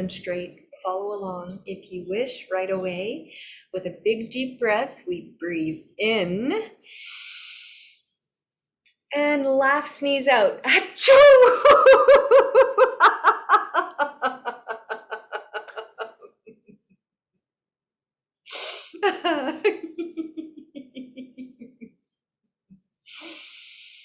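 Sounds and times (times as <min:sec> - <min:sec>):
woman laughing: 0:11.2 - 0:16.7, 0:18.7 - 0:21.9.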